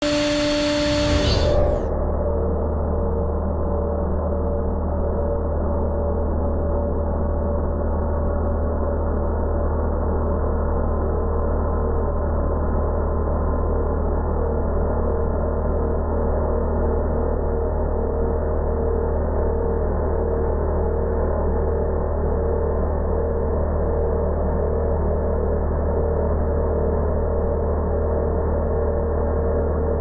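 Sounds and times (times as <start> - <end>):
pulsing ringing tone: 0.0 - 2.2
slowed milling drone: 0.0 - 6.0.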